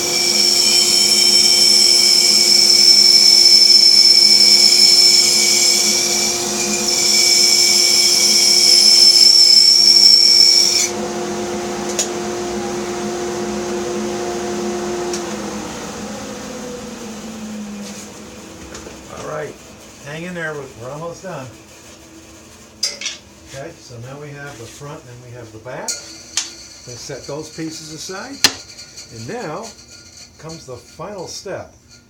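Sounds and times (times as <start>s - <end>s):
bandsaw cutting wood whine: 0.0s - 22.8s
saw motor hum: 0.0s - 22.8s.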